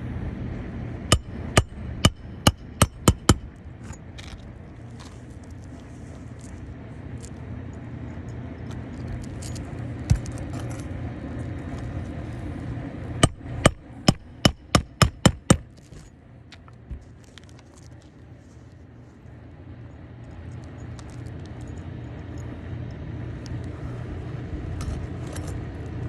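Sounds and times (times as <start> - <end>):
hammer striking nail: 1.1 - 3.5, 13.2 - 15.7.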